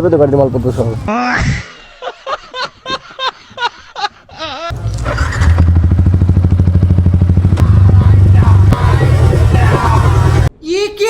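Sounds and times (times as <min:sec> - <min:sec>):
motorcycle exhaust running: 0:04.7 - 0:10.5.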